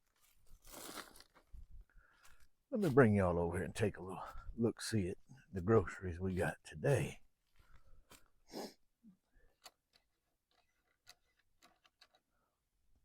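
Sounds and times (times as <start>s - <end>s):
soft rustle: 0.0s - 3.0s.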